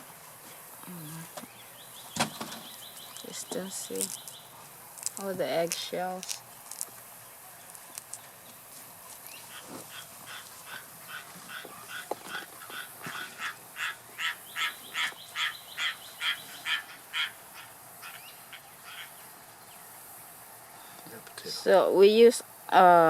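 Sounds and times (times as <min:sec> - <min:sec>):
short animal calls: 0:09.4 - 0:19.2.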